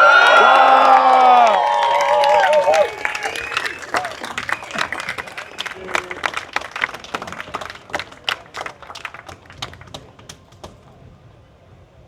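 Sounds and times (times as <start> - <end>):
audience clapping: 0.0 - 11.1.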